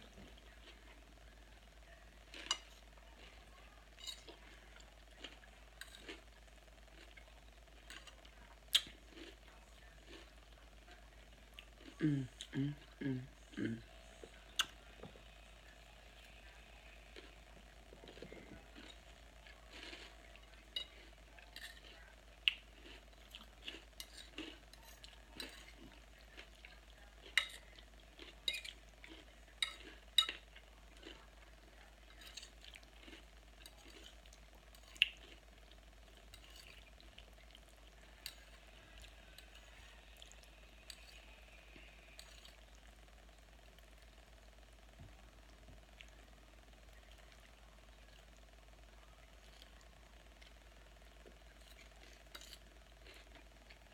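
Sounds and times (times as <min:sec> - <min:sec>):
faint steady hum: 0:00.0 - 0:53.9
crunchy chewing: 0:02.3 - 0:06.3, 0:06.9 - 0:10.4, 0:16.2 - 0:43.0, 0:49.3 - 0:53.9.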